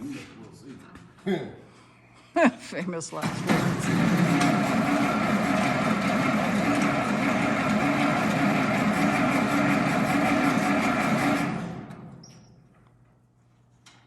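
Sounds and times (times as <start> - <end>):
gasoline engine turning over: 3.2 - 12.2.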